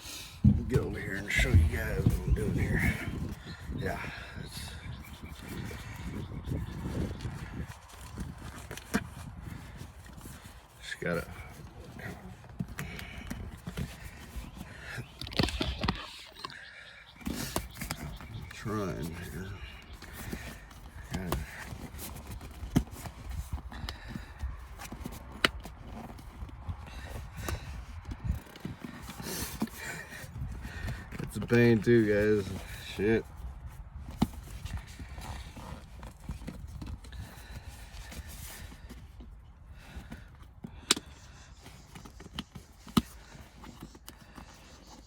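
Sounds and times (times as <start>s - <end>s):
clicks and knocks of plastic: 11.5s - 31.6s.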